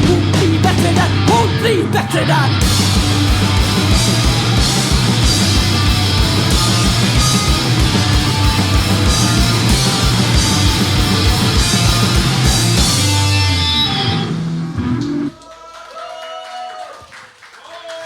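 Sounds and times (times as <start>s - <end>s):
fast steady drumbeat: 0.0s - 1.6s, 2.6s - 13.5s
distorted electric guitars and bass: 0.0s - 15.3s.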